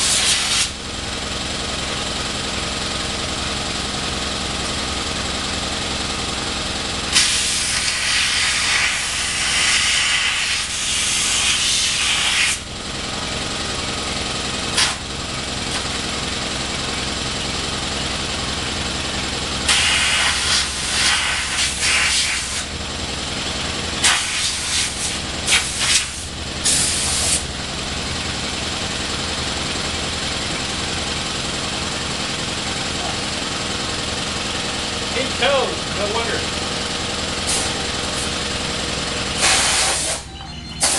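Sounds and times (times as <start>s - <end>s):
engine running: 0.0s - 40.9s
compressed air blow gun hissing: 7.1s - 12.6s, 19.7s - 22.7s, 24.0s - 27.4s, 37.5s - 37.8s, 39.4s - 40.2s.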